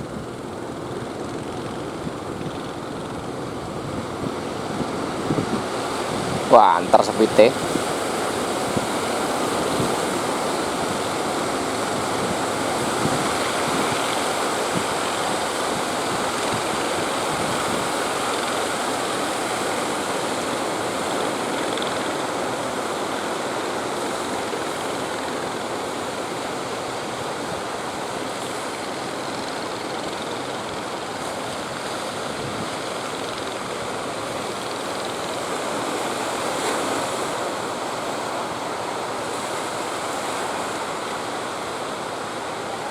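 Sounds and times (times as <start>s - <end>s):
wind buffeting microphone: 0.0s - 18.5s
sea surf breaking: 0.0s - 42.9s.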